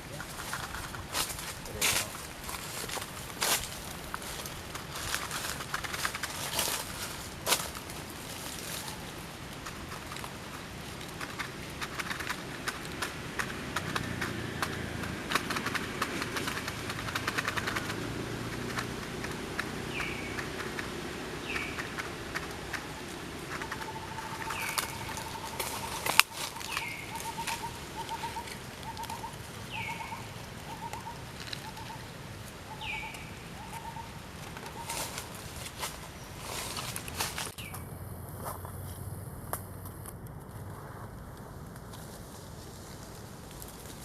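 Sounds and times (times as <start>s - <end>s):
crackling and rustling: 0.0s - 44.0s
low pulsing animal call: 12.0s - 35.2s
high falling animal call: 19.6s - 32.1s.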